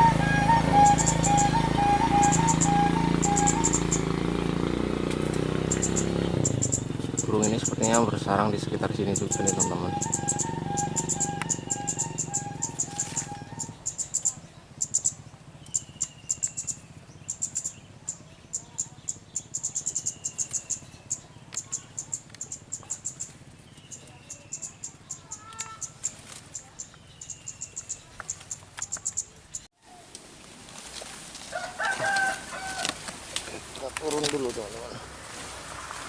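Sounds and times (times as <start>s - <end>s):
clucking calls: 0.0s - 4.1s, 5.6s - 8.1s, 8.8s - 17.7s
falling bird whistle: 0.0s - 4.1s, 9.2s - 17.7s
high bird chirps: 0.0s - 4.6s, 5.6s - 29.7s.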